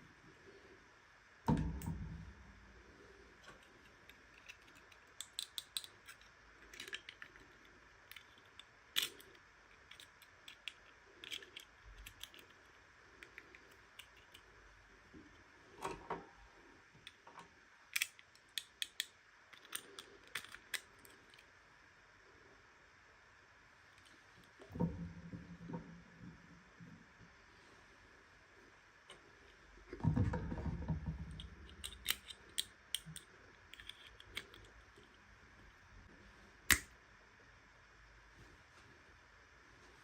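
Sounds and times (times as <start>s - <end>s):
toy pieces clicking: 4.4s - 7.4s.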